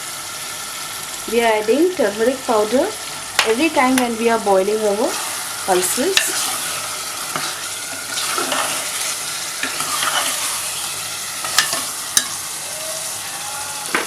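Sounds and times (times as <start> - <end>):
gravy sizzling in a pot: 0.0 - 14.0
spoon stirring and scraping: 6.1 - 12.4.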